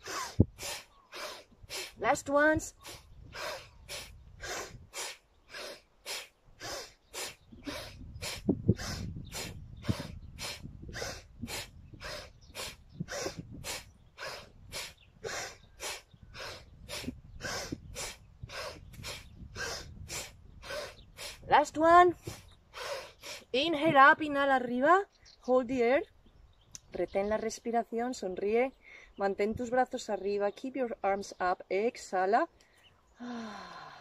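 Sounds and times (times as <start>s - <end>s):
rapid rhythmic breathing: 0.0s - 21.5s, 22.2s - 23.6s.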